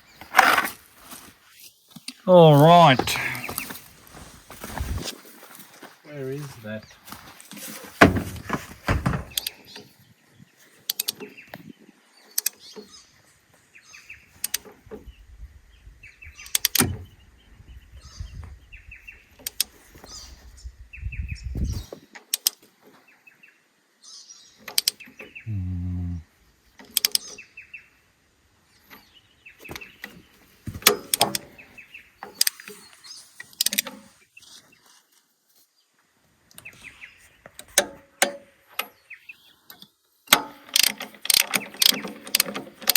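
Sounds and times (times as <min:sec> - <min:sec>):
low rumble: 0:25.5 - 0:26.2
hand tools clicking and knocking: 0:40.3 - 0:42.9.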